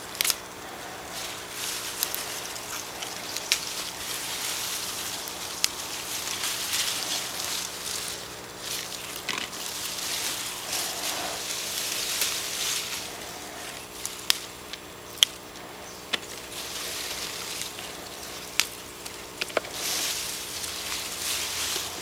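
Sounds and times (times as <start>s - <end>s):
faint steady hum: 0.0s - 22.0s
plants rustling: 0.0s - 22.0s
sharp snaps: 14.0s - 16.4s.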